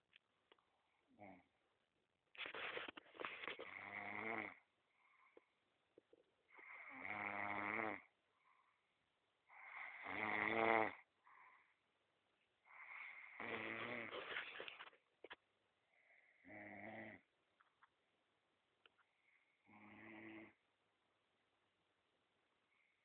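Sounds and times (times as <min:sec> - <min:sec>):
person snoring: 0:03.2 - 0:04.6, 0:06.5 - 0:08.1, 0:09.5 - 0:11.0, 0:12.7 - 0:14.6, 0:16.2 - 0:17.2, 0:19.6 - 0:20.6.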